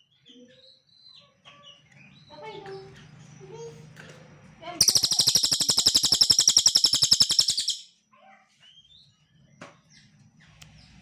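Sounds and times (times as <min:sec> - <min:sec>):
bird fast high trill: 0:04.8 - 0:07.9.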